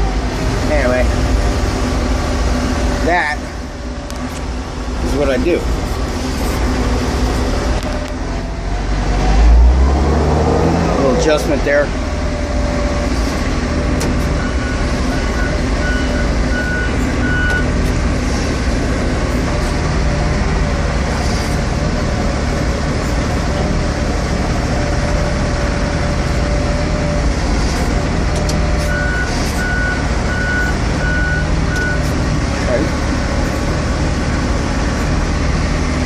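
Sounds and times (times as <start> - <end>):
diesel engine running under load: 0.0 - 36.0
reversing alarm beeps: 14.4 - 17.7, 28.9 - 32.1.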